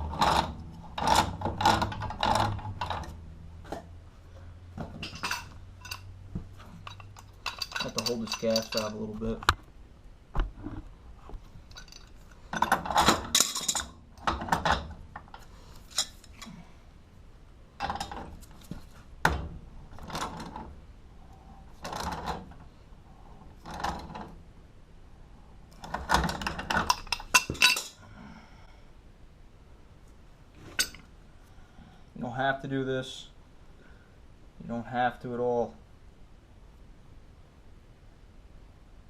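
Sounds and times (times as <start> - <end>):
metal tools clinking and scraping: 4.8 - 9.4, 11.6 - 16.6, 25.8 - 28.0, 30.6 - 31.1.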